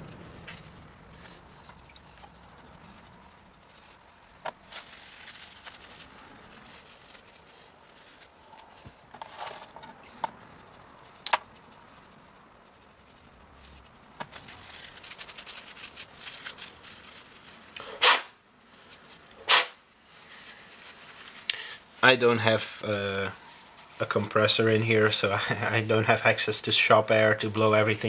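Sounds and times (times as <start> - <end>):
puffs of breath: 21.5 - 21.9.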